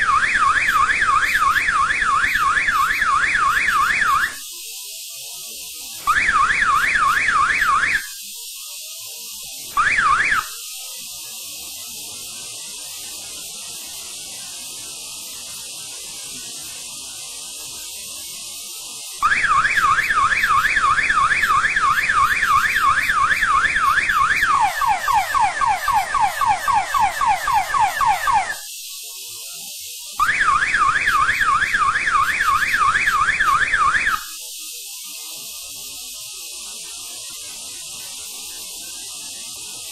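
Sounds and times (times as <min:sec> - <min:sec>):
electronic alarm siren warbling: 0:00.0 - 0:04.5, 0:06.0 - 0:08.2, 0:09.8 - 0:10.7, 0:19.2 - 0:28.7, 0:30.2 - 0:34.4.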